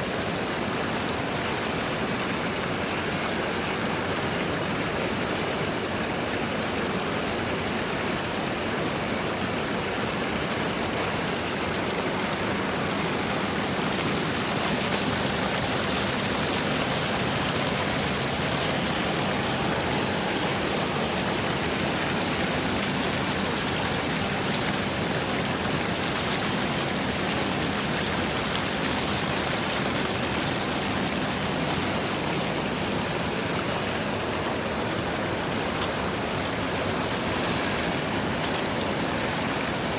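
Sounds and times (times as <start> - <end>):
running splashing water: 9.9 - 39.9.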